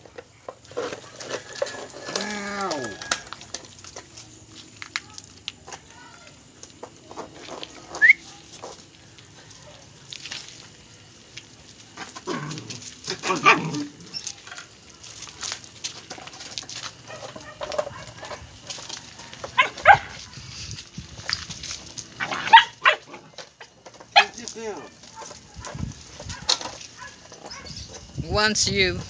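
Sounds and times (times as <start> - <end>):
puppies yipping and barking: 16.1 - 20.6, 22.1 - 28.1.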